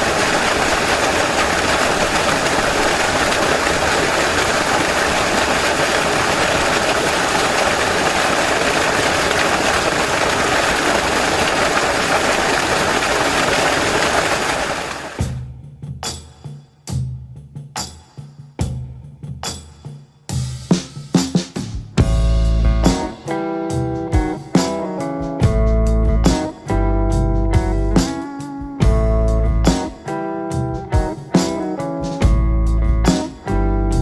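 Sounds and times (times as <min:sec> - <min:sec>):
fast-flowing water rushing: 0:00.0 - 0:15.2.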